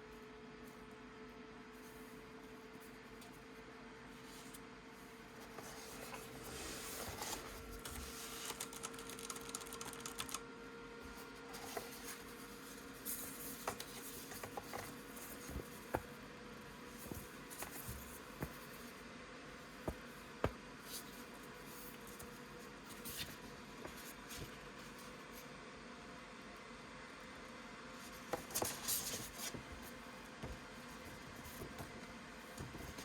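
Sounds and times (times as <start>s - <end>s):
keyboard rustling: 5.3s - 10.4s, 11.1s - 19.0s, 28.1s - 33.0s.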